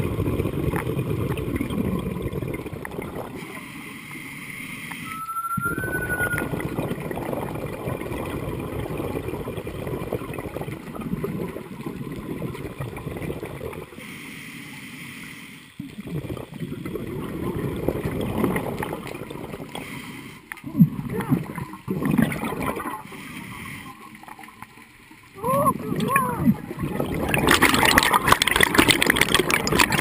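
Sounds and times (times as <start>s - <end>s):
gurgling exhaust bubbles underwater: 0.0s - 14.9s, 15.8s - 30.0s
regulator inhale hiss: 14.0s - 15.8s, 19.8s - 20.5s.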